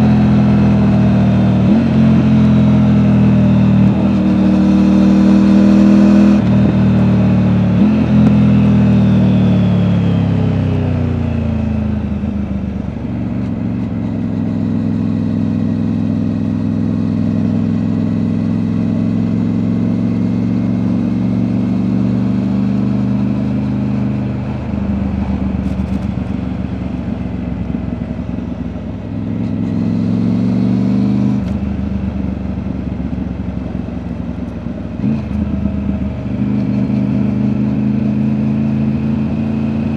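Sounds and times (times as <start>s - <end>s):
motorcycle engine: 0.0s - 39.9s
gear changes: 21.4s - 39.9s.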